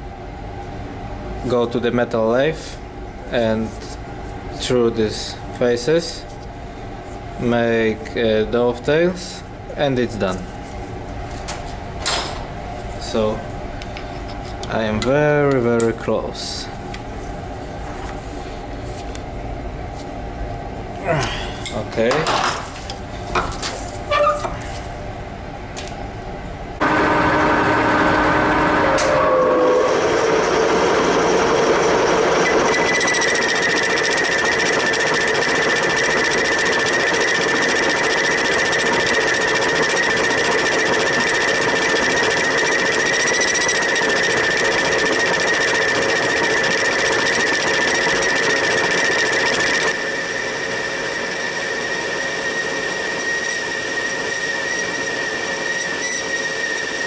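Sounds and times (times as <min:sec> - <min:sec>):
metal lathe machining noise: 0:26.8 - 0:57.0
cutting tool squealing: 0:32.4 - 0:50.0, 0:52.5 - 0:57.0.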